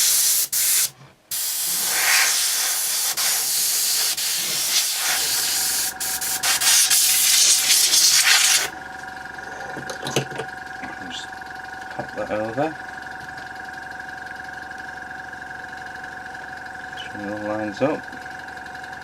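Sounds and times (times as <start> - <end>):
compressed air hissing: 0.0 - 8.7.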